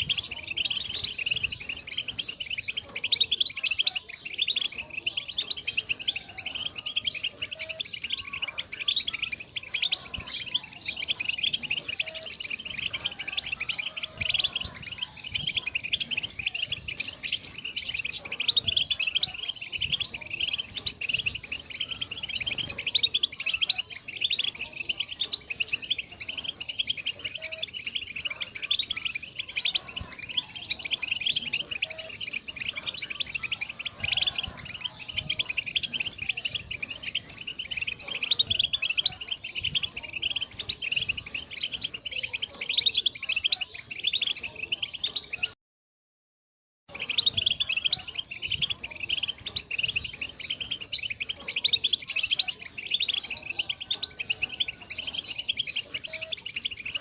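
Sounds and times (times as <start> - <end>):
goldfinch twittering song: 0.0 - 45.6, 46.9 - 57.0.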